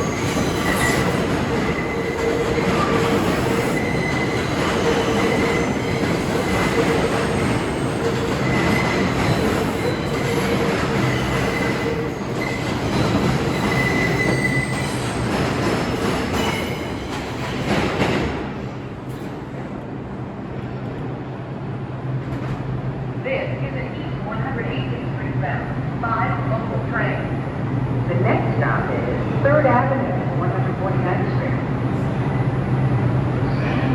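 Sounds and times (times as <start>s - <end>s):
train wheels squealing: 0.0s - 17.7s
subway cars rumbling: 0.0s - 33.9s.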